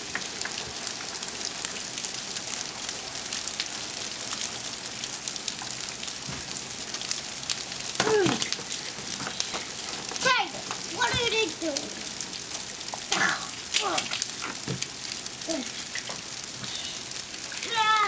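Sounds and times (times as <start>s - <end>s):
steady rain falling: 0.0s - 18.0s
person calling out: 8.0s - 8.5s, 10.2s - 12.0s, 13.1s - 14.2s, 15.4s - 15.8s, 16.6s - 18.0s.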